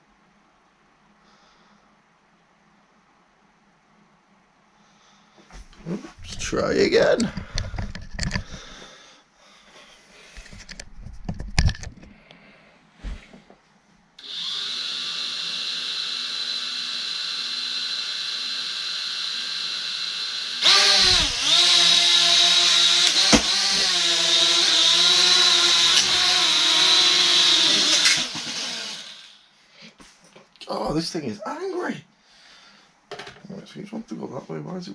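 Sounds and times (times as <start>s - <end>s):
drone motors whining: 14.2s - 29.4s.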